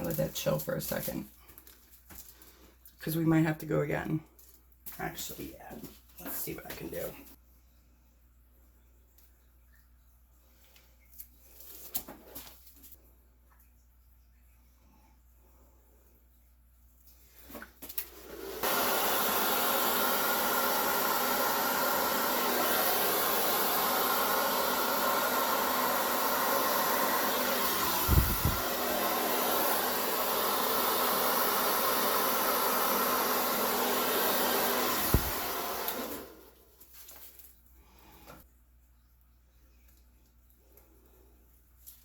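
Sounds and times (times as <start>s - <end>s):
electric air blower running: 18.2s - 36.6s.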